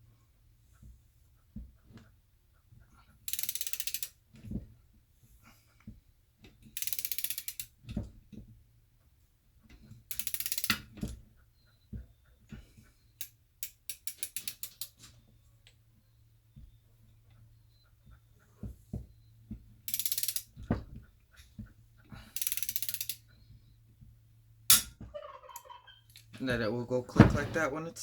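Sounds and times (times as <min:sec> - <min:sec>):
torque wrench ratchet clicking: 0:03.3 - 0:04.1, 0:06.8 - 0:07.7, 0:10.1 - 0:10.8, 0:19.9 - 0:20.5, 0:22.4 - 0:23.2.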